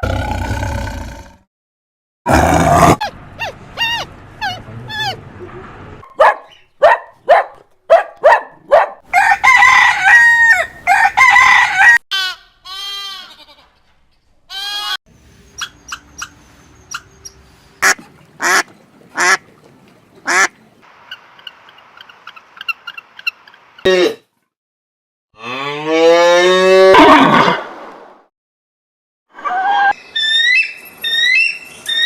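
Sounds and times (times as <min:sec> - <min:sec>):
dog barking: 0:06.0 - 0:09.1
ducks quacking: 0:17.8 - 0:23.6
geese honking: 0:20.2 - 0:20.5.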